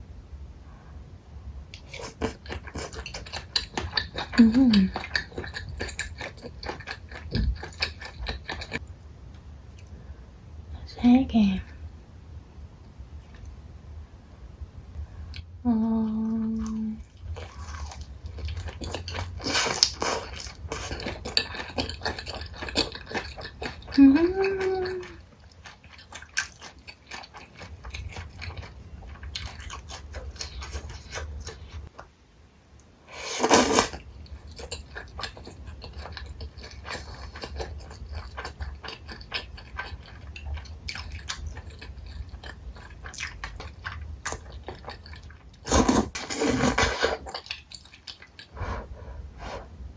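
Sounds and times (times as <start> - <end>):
wet chewing clicks and smacks: 1.7 - 8.8, 17.1 - 24.0, 25.4 - 32.1, 34.4 - 45.7, 47.2 - 48.6.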